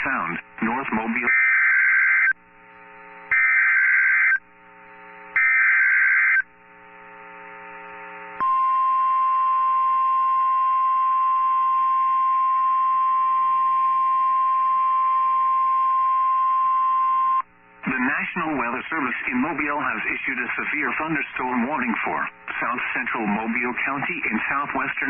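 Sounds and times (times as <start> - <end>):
steady warning alarm tone: 1.2 - 2.4, 3.3 - 4.5, 5.4 - 6.5.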